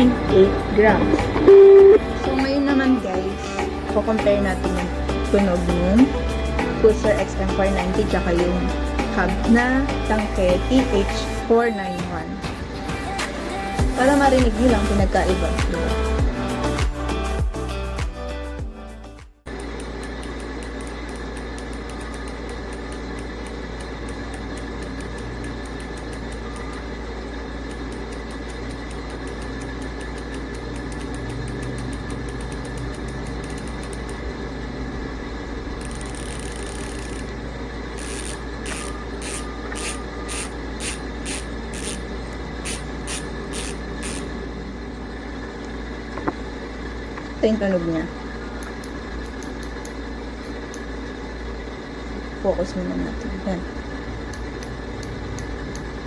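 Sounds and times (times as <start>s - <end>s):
bicycle freehub ratcheting: 27.6s - 34.2s, 35.7s - 37.3s, 38.0s - 44.4s.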